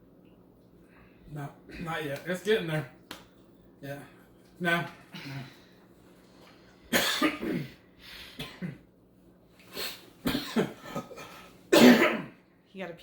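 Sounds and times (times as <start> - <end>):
man clearing his throat: 6.9 - 7.8, 8.4 - 8.9, 10.2 - 12.4
man coughing hard: 6.9 - 8.9, 10.2 - 12.4.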